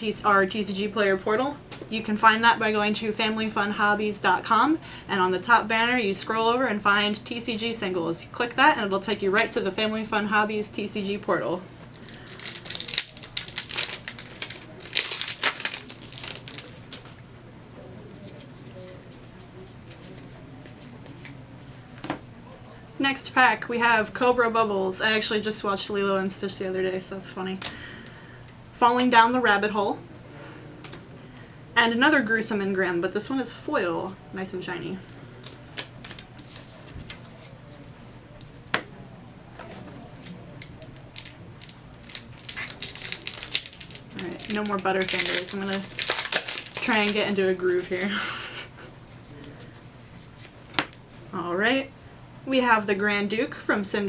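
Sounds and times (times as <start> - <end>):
foil wrapper crinkling: 11.8 - 17.2, 35.4 - 37.8, 39.7 - 48.2.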